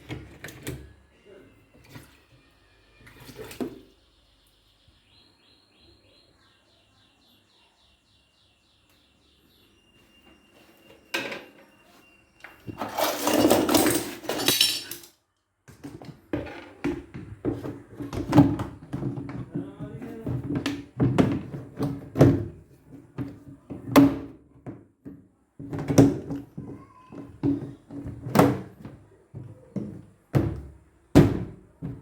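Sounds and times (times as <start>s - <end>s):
faint high chirps: 1.2s - 12.8s
clattering knocks of hard objects: 12.7s - 15.1s, 15.7s - 32.0s.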